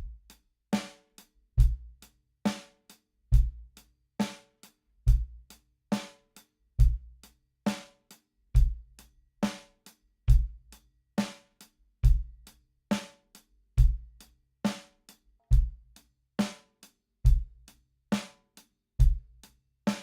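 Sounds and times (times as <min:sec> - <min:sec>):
bass drum: 0:01.6 - 0:01.9, 0:03.4 - 0:03.6, 0:10.3 - 0:10.6.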